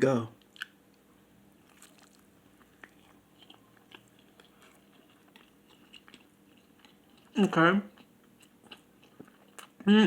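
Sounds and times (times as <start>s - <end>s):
man chewing crunchy food: 1.6s - 9.9s.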